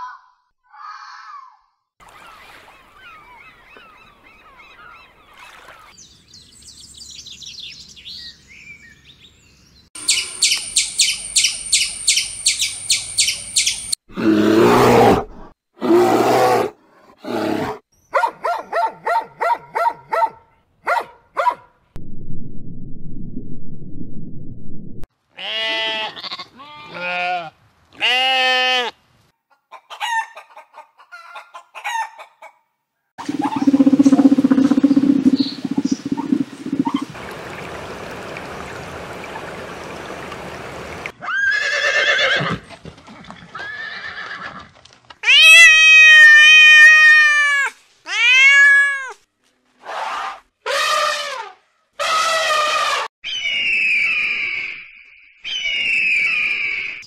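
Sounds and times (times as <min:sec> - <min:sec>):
animal calls: 0:33.2 - 0:37.2
fast repeated animal calls: 0:33.2 - 0:37.2
loud pitched animal calls: 0:33.2 - 0:37.2.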